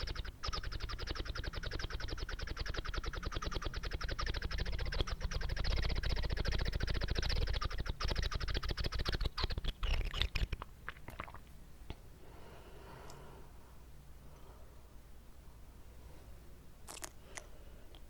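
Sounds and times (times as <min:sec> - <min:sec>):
wet mouth clicking and smacking: 0:00.6 - 0:11.5, 0:16.9 - 0:17.5.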